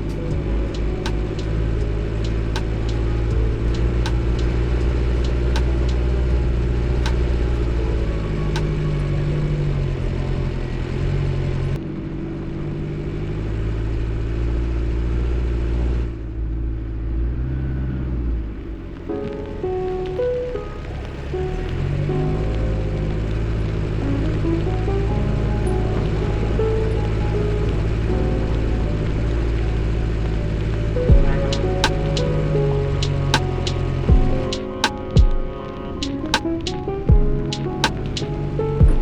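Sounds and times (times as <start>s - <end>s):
road noise on dirt track: 0.0s - 20.2s.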